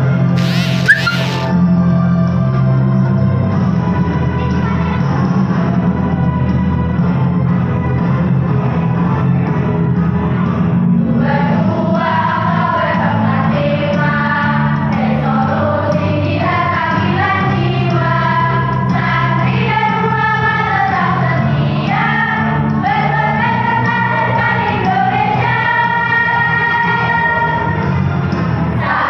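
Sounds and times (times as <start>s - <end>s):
instrumental accompaniment with bass: 0.0s - 1.6s
choir singing: 28.8s - 29.0s.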